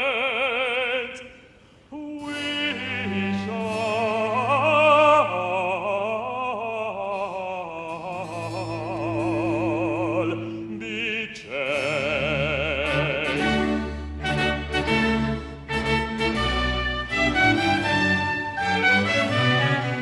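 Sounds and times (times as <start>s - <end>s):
operatic bass voice singing: 1.9s - 14.9s
baroque orchestral accompaniment: 2.4s - 6.0s, 8.4s - 20.0s.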